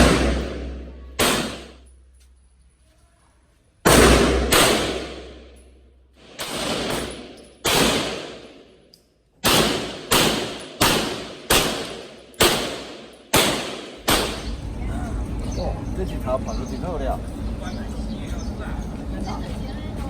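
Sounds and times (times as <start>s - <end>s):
gunshots with ringing echo: 0.0s - 2.0s, 3.8s - 8.8s, 9.4s - 14.7s.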